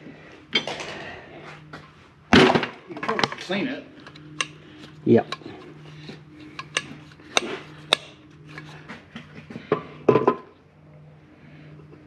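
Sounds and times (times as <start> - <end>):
metal tools clinking and knocking: 6.4 - 8.8.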